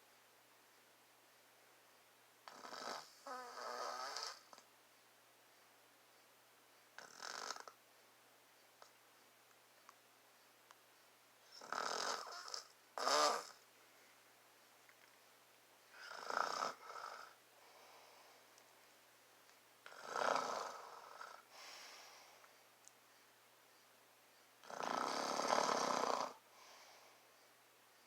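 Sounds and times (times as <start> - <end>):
man snoring: 2.5 - 4.4, 7.0 - 7.7, 11.6 - 13.5, 16.0 - 17.4, 19.9 - 21.4, 24.6 - 26.4.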